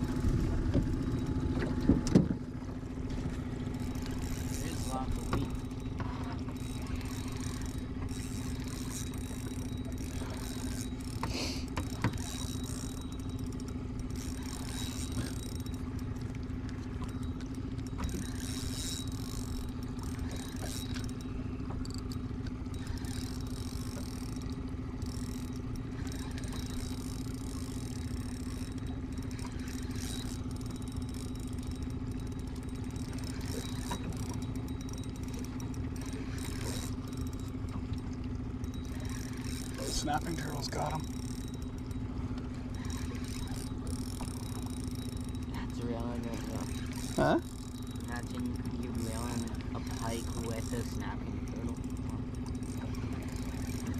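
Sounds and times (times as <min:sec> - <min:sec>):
outboard motor idling: 0:00.0 - 0:53.9
light clicks and rattles: 0:03.0 - 0:53.9.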